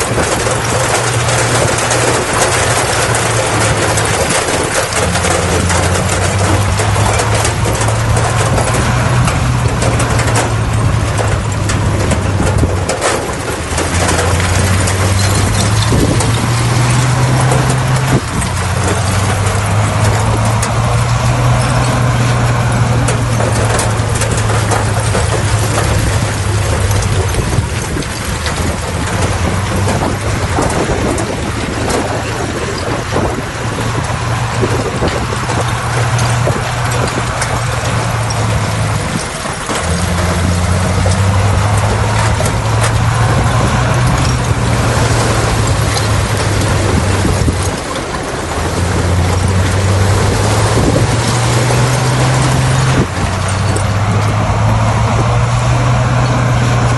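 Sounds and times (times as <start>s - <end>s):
bulldozer diesel engine under load: 0.0s - 56.9s
dense noisy rattle: 0.0s - 56.9s.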